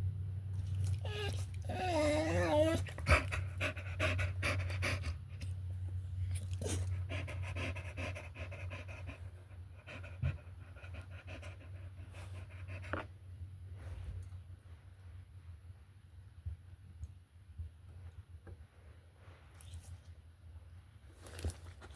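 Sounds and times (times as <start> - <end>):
dog panting rapidly: 1.9 - 5.4, 6.6 - 13.1.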